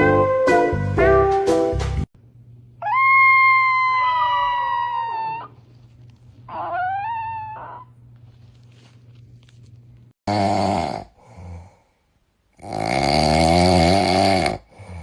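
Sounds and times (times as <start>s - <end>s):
dog howling: 2.8s - 5.7s, 6.5s - 8.0s.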